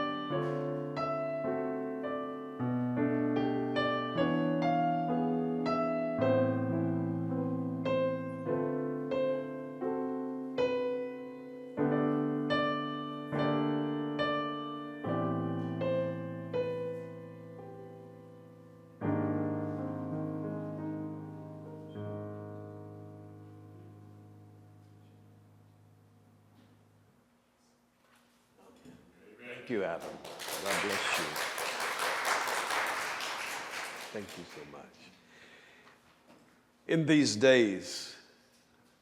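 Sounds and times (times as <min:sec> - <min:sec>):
solo piano chords: 0:00.0 - 0:27.0.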